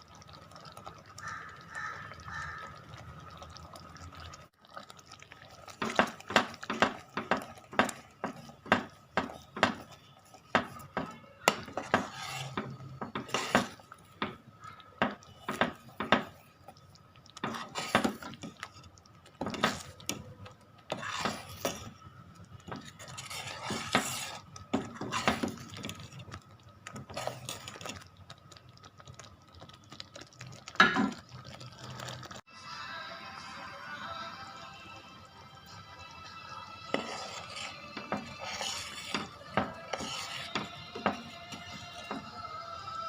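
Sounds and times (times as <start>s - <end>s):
metal utensil scraping cooking pot: 5.7s - 16.5s, 17.3s - 22.0s, 22.6s - 28.0s, 36.7s - 42.4s.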